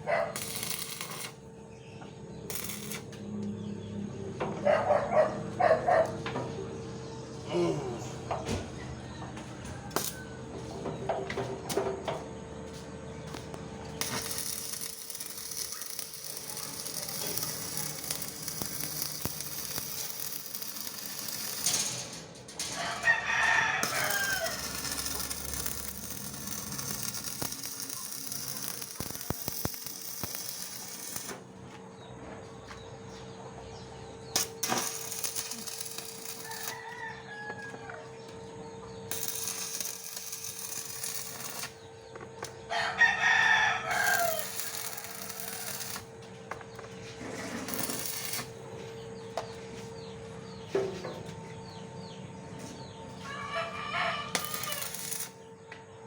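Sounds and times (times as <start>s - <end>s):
rooster crowing: 9.0s - 10.7s, 22.7s - 25.7s, 36.1s - 38.2s, 42.7s - 46.0s, 53.2s - 55.1s.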